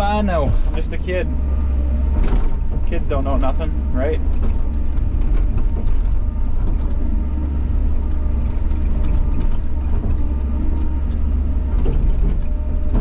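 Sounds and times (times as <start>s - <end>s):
bucket clunks and scrapes: 0.0s - 1.4s
excavator diesel engine running: 0.0s - 13.0s.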